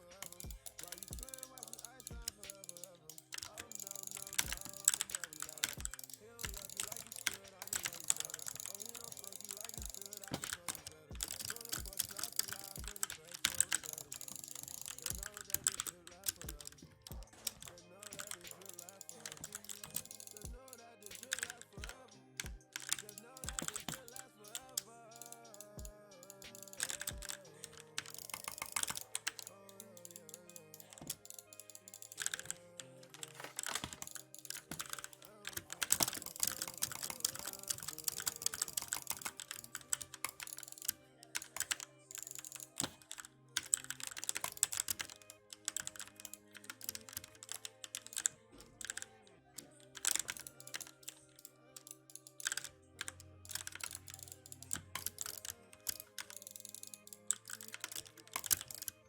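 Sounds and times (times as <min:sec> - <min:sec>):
mechanical keyboard typing: 0:00.0 - 0:59.0.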